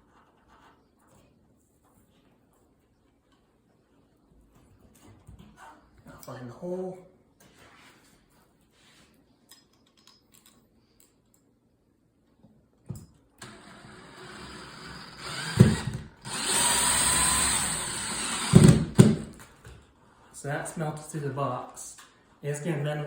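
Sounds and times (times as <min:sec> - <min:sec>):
power drill whining: 0:13.4 - 0:19.4.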